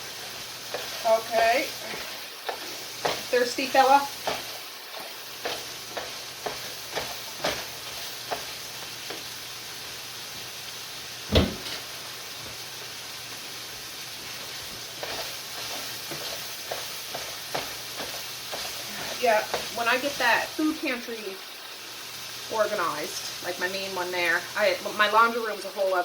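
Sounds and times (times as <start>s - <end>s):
meat sizzling in a pan: 0.0s - 26.0s
solid thump: 11.3s - 11.8s.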